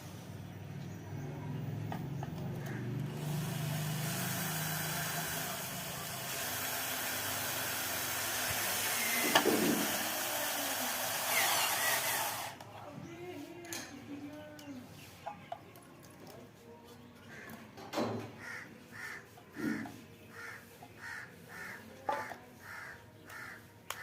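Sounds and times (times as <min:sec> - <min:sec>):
electric drill running: 0:03.0 - 0:12.6.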